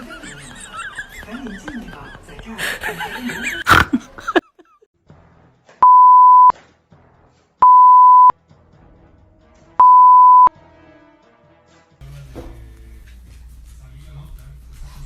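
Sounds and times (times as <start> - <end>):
long electronic beeps: 5.8 - 6.5, 7.6 - 8.3, 9.8 - 10.5.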